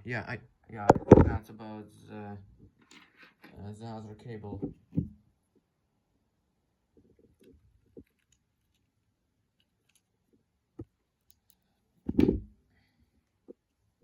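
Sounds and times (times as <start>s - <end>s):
plastic parts clicking and tapping: 7.3s - 8.9s
plastic knock: 12.1s - 12.5s.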